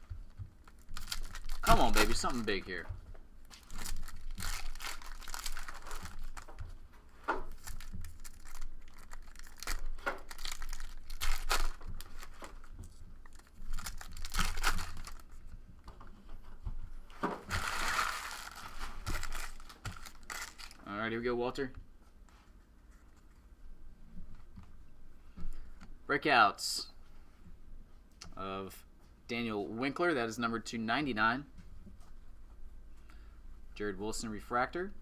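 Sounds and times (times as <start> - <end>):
card pack wrappers tearing and crinkling: 0.6 - 2.6, 3.6 - 6.6, 7.5 - 12.6, 13.2 - 15.4, 17.5 - 20.8.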